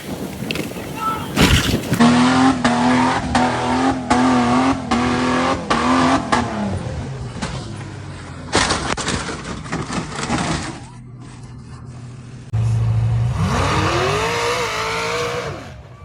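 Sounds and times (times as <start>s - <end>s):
truck engine revving hard: 1.4s - 7.8s, 12.6s - 16.0s.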